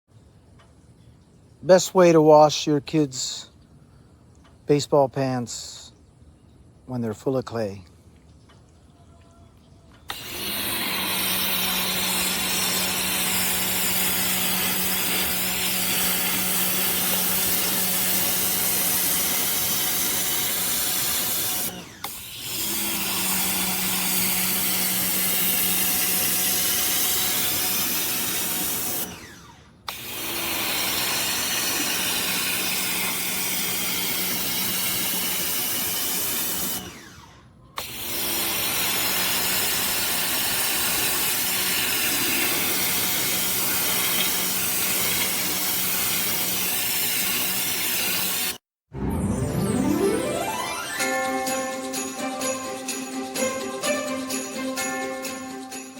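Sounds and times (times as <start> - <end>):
high-pressure water jet hissing: 10.1 - 29.3, 30.0 - 36.9, 37.8 - 48.6
pressure washer pump humming: 10.1 - 48.6.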